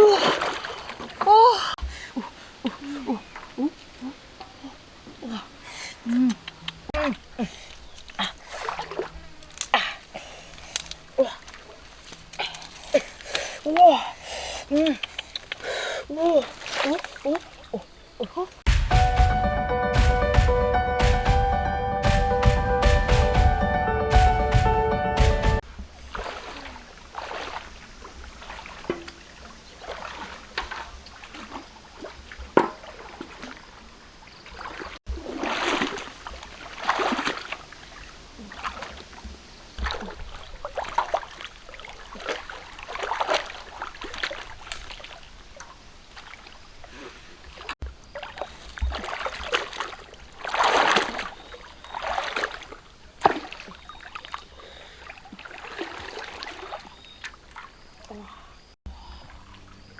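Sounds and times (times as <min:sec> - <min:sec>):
river water splashing: 0:00.0 - 0:59.9.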